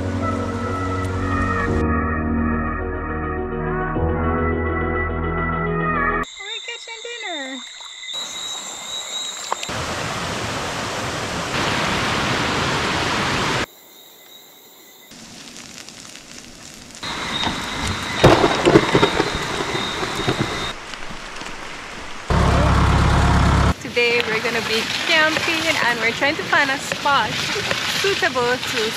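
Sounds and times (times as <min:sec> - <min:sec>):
heavy rain falling: 0:09.7 - 0:13.7, 0:16.4 - 0:28.9
thunder cracks: 0:17.0 - 0:21.3
loud low hum: 0:22.3 - 0:23.8.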